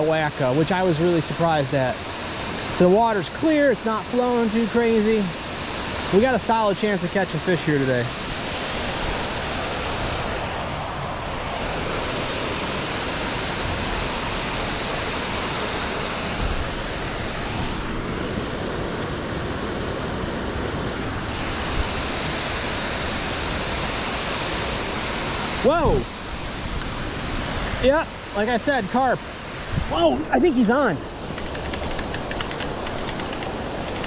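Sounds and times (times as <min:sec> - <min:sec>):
water rushing over waterfall: 0:00.0 - 0:18.3, 0:20.1 - 0:31.7.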